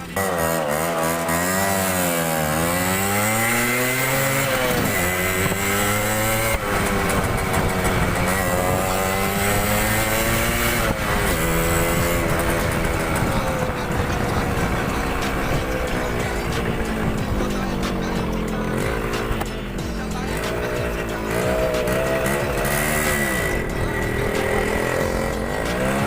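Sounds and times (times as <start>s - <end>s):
motorcycle engine revving: 0.0s - 26.0s.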